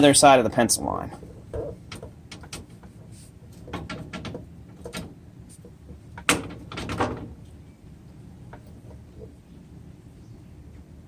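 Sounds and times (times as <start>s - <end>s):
steel stock clanking and scraping: 1.1s - 7.4s.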